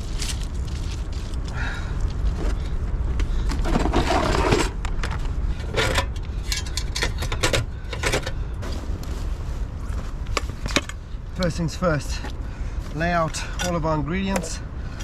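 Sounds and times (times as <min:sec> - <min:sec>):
scraping rustle: 0:03.5 - 0:07.2, 0:08.0 - 0:11.0
metallic rattles and clinks: 0:05.7 - 0:08.4.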